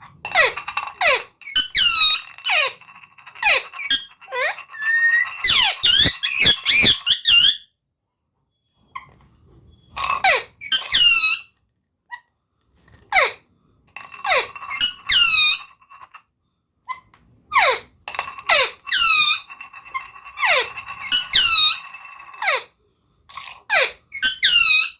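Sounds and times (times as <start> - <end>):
parrot squawking: 3.4 - 7.6.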